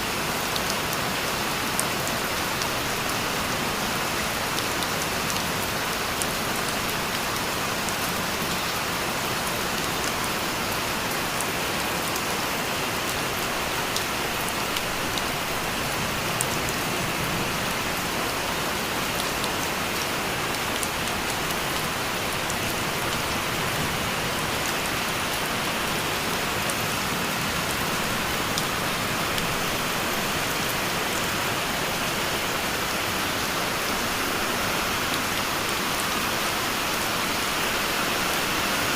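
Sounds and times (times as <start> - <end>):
rain on a hard surface: 0.0 - 38.9.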